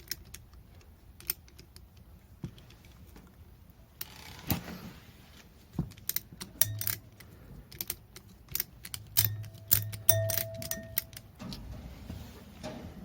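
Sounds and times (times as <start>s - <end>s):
metal parts clicking and clinking: 5.9s - 11.7s.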